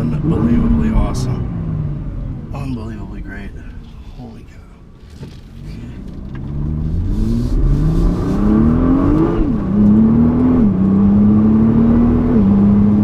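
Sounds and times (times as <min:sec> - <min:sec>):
car engine accelerating hard: 0:00.0 - 0:02.9, 0:05.4 - 0:13.0
engine pitch dropping on upshifts: 0:05.6 - 0:13.0.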